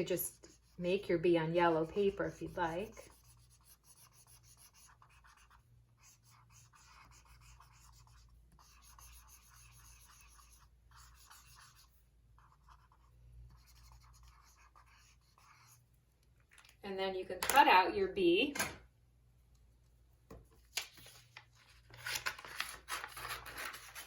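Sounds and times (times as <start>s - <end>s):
colouring strokes scratching paper: 0.0s - 15.9s, 23.0s - 24.0s.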